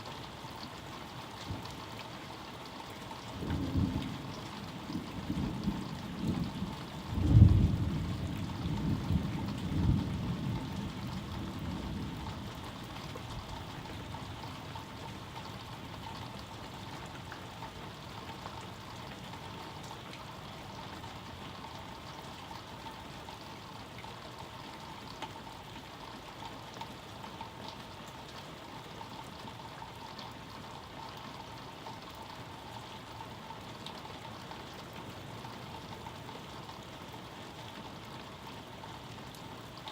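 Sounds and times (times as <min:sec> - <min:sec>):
steady rain: 0:00.0 - 0:39.9
thunder clap and rumbling: 0:04.9 - 0:10.9.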